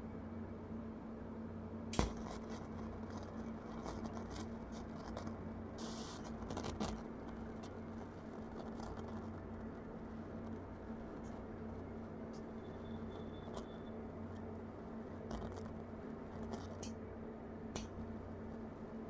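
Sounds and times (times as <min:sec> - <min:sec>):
sharp speaker pop: 0:01.9 - 0:02.2.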